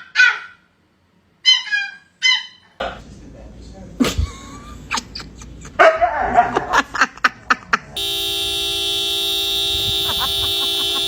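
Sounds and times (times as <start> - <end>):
dog barking and growling: 5.8 - 6.8
steady horn-like tone: 8.0 - 11.0.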